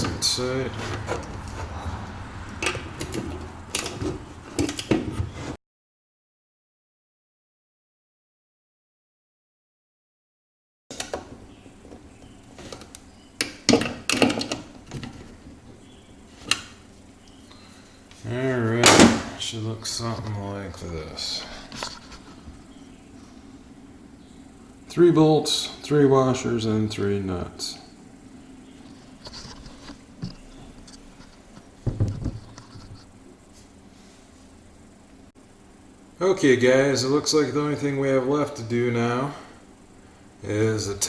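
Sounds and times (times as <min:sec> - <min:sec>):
hand tool tightening nuts: 0:00.0 - 0:05.6
rustling: 0:00.0 - 0:05.6
metal hardware clicking: 0:02.5 - 0:05.0
dull knock: 0:31.8 - 0:32.4.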